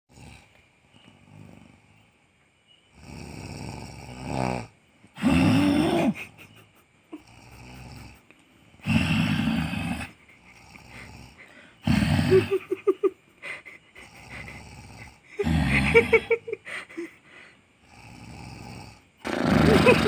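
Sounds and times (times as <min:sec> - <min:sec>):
loud snoring: 0:00.1 - 0:02.0, 0:02.9 - 0:06.4, 0:07.1 - 0:13.2, 0:13.8 - 0:17.1, 0:17.8 - 0:20.0
quiet breaths: 0:00.1 - 0:19.5.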